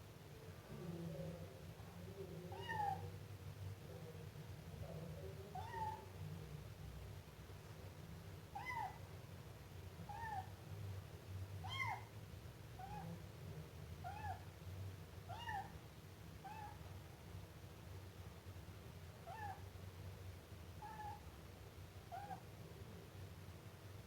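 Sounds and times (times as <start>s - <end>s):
kitten meowing: 5.6s - 6.0s, 8.6s - 9.0s, 11.6s - 12.1s, 15.3s - 15.7s.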